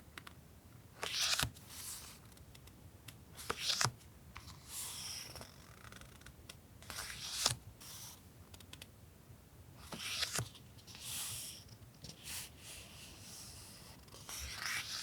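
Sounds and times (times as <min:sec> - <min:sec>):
paper rustling: 0:09.9 - 0:10.6.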